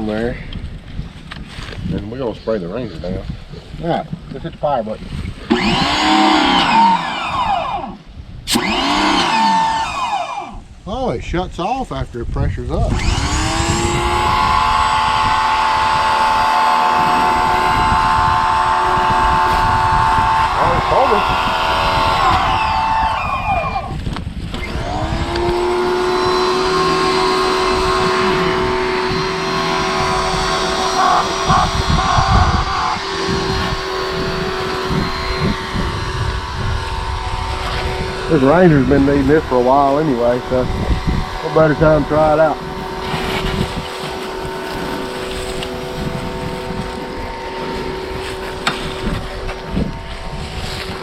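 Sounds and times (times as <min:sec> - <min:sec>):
wind rumble on microphone: 0:00.0 - 0:51.0
electric pressure washer motor: 0:05.4 - 0:10.6, 0:12.9 - 0:51.0
water spraying: 0:12.9 - 0:51.0.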